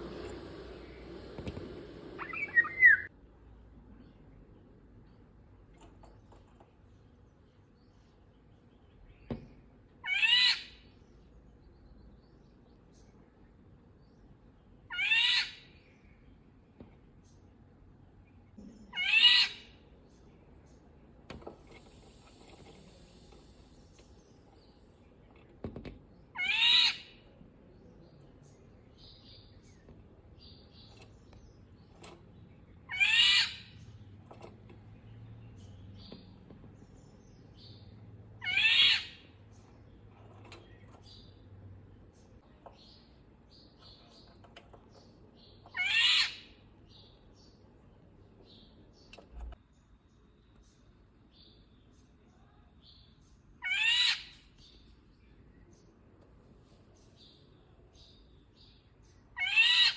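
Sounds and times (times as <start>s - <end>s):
oriole calling: 2.0s - 3.1s
faint bird chirps: 2.2s - 3.1s, 26.2s - 59.9s.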